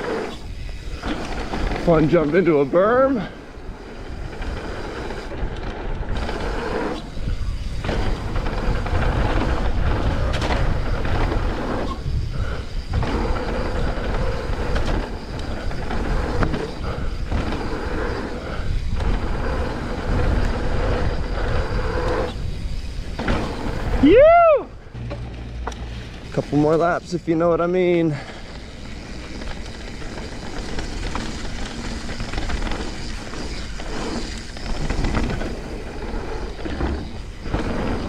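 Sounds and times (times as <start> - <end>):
bike tyres rolling on dirt: 0.0 - 38.0
wind rushing over camera: 0.0 - 38.0
bike knocks and rattles: 4.2 - 20.9, 22.2 - 24.2, 28.2 - 38.0.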